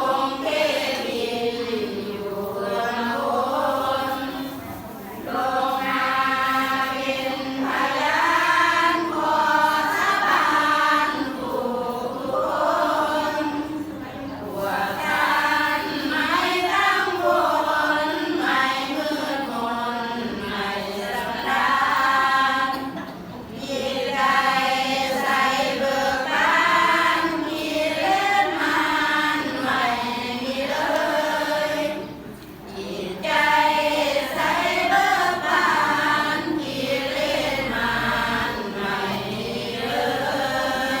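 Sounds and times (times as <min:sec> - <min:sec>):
group chanting in unison: 0:00.0 - 0:41.0.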